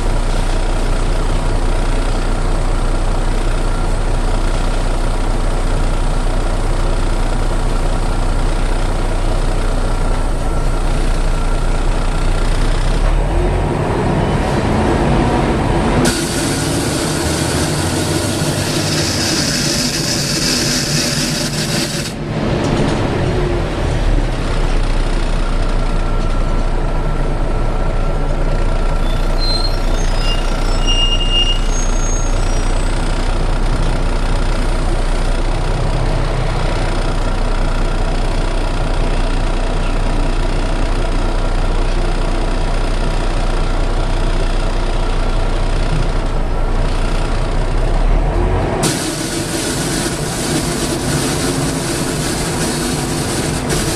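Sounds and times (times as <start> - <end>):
bus diesel engine running: 0.0 - 53.9
loud hiss of air: 16.0 - 21.6, 48.8 - 53.9.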